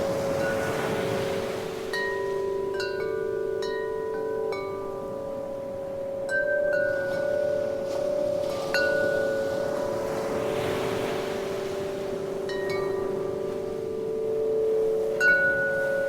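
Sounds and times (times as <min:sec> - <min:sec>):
wind chime notes ringing: 0:13.8 - 0:16.0.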